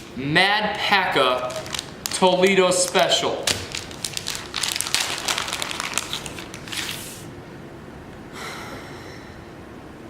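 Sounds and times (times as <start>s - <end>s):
plastic packaging crinkling: 1.2s - 7.3s.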